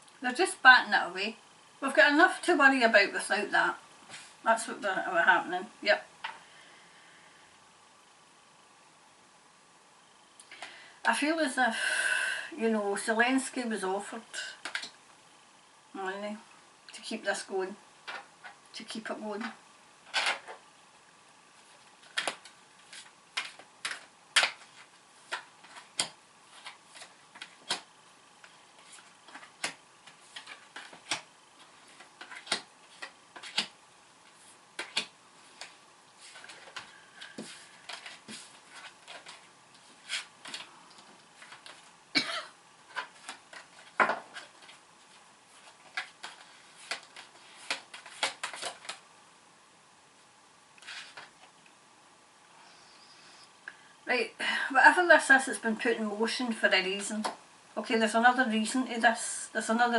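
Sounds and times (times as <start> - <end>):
cards being shuffled: 14.6 - 15.0, 19.4 - 20.6, 21.6 - 41.9, 42.9 - 49.0, 50.8 - 51.5
cards slapping: 22.0 - 27.9, 28.8 - 33.8, 34.8 - 39.4, 45.6 - 49.0.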